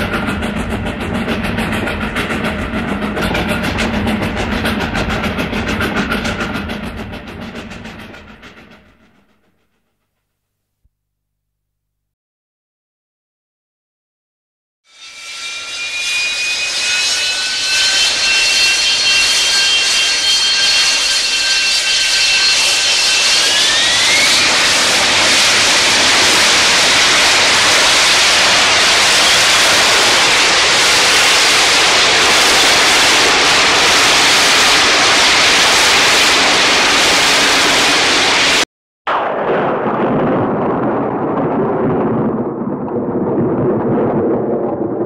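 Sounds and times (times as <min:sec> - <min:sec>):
jet engine spooling up: 0:00.0 - 0:09.8, 0:15.4 - 0:39.2.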